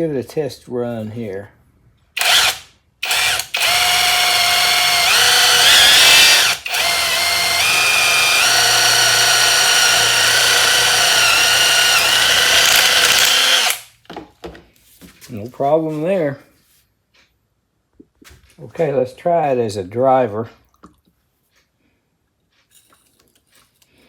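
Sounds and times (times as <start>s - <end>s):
cordless drill whine: 2.2s - 13.9s.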